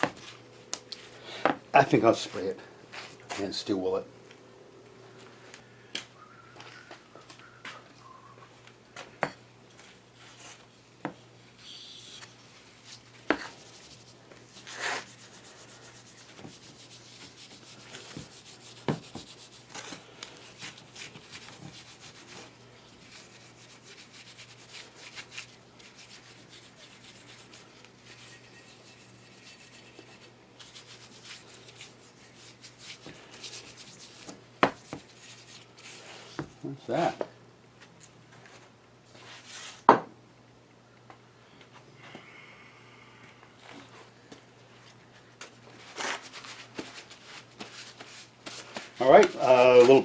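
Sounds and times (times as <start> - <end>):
steel wool scrubbing metal: 23.0 - 33.0.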